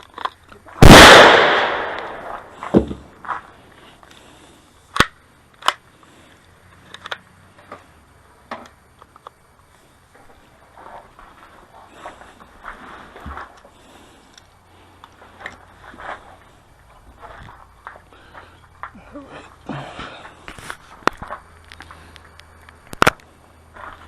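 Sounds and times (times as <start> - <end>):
distant gunfire cracks: 0.8 - 2.5
loud rifle shot: 0.8 - 2.9.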